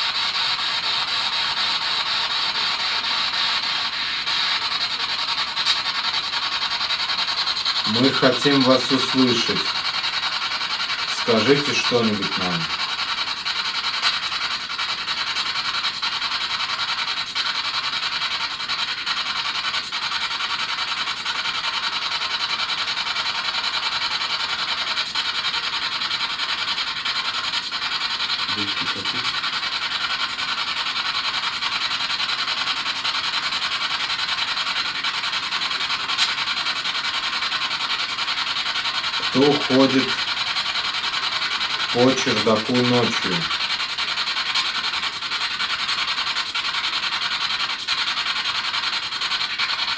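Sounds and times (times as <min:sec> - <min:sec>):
static hiss: 0:00.0 - 0:13.4, 0:28.1 - 0:29.7, 0:38.9 - 0:43.8
voice-like fragment: 0:07.9 - 0:09.8, 0:11.1 - 0:12.8, 0:28.5 - 0:29.3, 0:39.2 - 0:40.2, 0:42.0 - 0:43.5.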